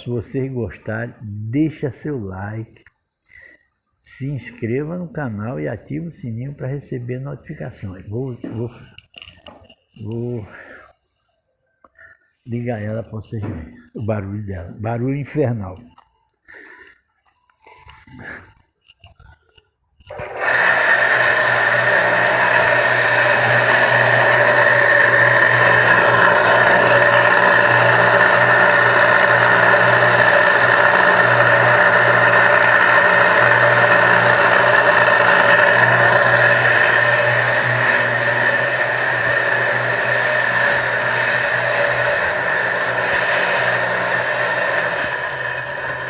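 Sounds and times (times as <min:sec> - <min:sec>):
electric water pump humming: 0:20.1 - 0:46.0.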